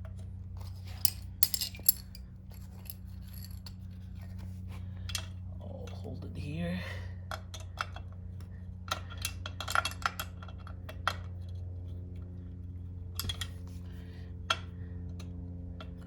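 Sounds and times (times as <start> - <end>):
steady low hum: 0.0 - 16.0
wrench clinking on metal bolts: 1.0 - 3.7.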